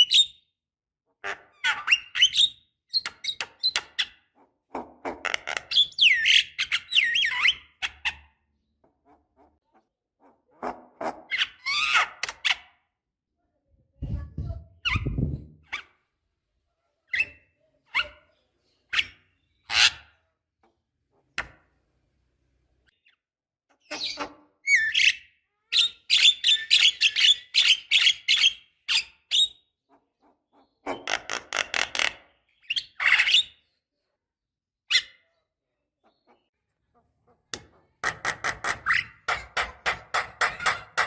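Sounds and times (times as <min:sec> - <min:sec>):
myna bird calling and chattering: 0:23.8 - 0:33.6.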